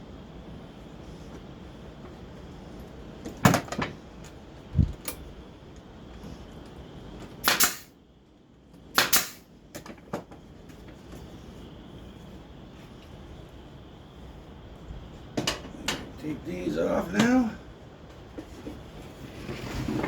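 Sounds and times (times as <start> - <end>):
nail gun firing into wood: 7.4 - 7.9, 9.0 - 9.5.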